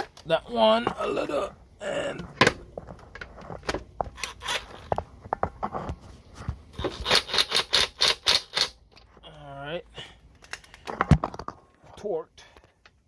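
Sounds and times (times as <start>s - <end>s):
hand ratchet clicking: 6.8s - 8.8s.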